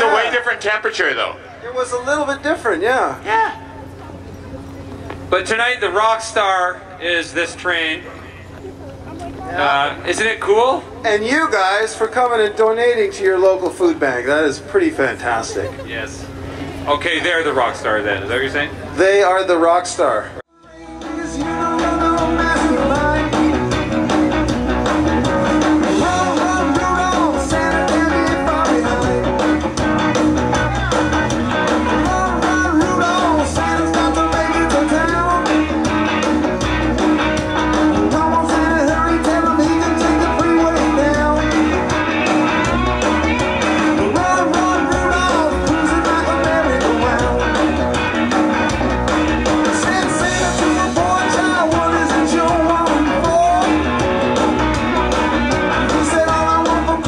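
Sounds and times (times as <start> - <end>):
guitar: 0.0 - 19.6, 20.2 - 57.0
person singing: 20.6 - 24.3, 24.9 - 29.6, 31.7 - 36.1, 37.4 - 47.8, 49.5 - 57.0
live rock band playing: 20.6 - 57.0.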